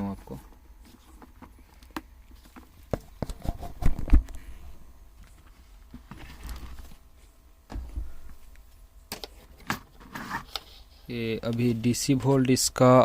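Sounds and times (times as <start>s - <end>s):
heavier thumps: 7.6s - 8.5s.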